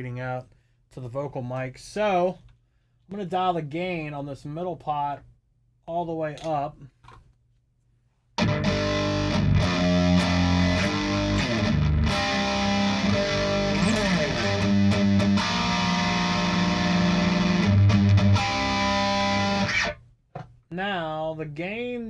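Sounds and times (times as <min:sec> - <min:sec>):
distorted electric guitar riffs: 0:08.4 - 0:20.0.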